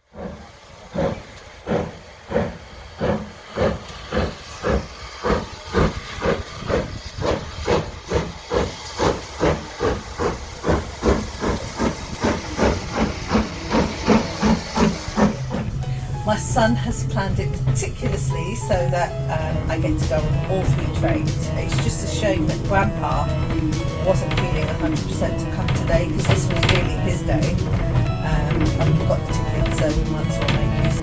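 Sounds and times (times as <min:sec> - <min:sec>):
steam locomotive chuffing: 0:00.0 - 0:31.0
hiss of steam: 0:00.1 - 0:17.6.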